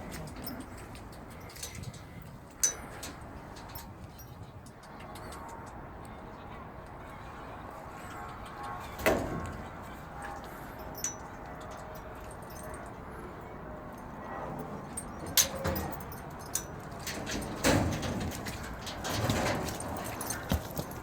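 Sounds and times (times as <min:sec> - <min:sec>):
metal clank: 0:15.2 - 0:20.9.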